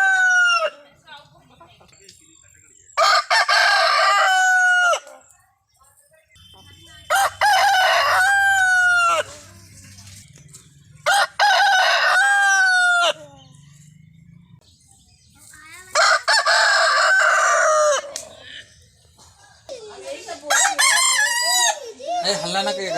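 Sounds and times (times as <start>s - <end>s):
rooster crowing: 0.0s - 0.8s, 3.0s - 5.1s, 7.1s - 9.4s, 11.0s - 13.2s, 16.0s - 18.4s, 20.5s - 22.5s.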